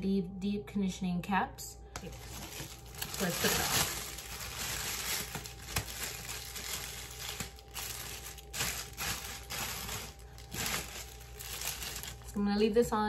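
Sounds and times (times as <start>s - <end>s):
plastic cap crinkling and rustling: 2.0s - 12.3s.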